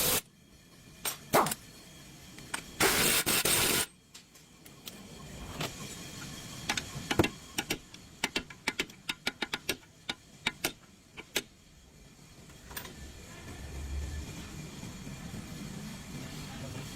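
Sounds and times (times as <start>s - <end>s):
sharp irregular clicks and taps: 6.7s - 11.5s.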